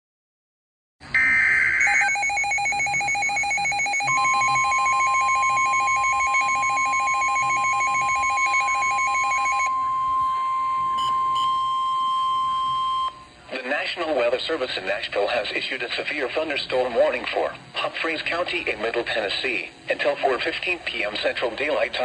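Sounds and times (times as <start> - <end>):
digital data screech: 1.2 - 10.4
pulsing electronic alarm beep: 1.2 - 13.3
steady warning alarm tone: 1.2 - 13.4.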